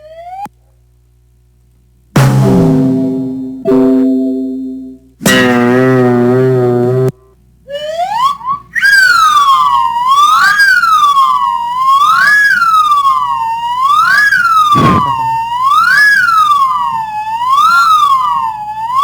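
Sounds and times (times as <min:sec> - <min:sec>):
police siren wailing: 0:07.8 - 0:19.0
brief thump: 0:14.8 - 0:15.4.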